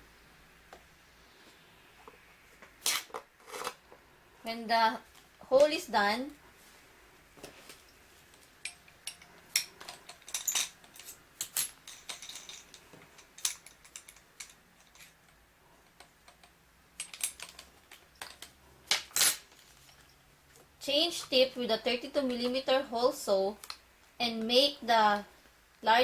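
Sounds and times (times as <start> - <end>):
small tool parts clicking: 8.6 - 20.0.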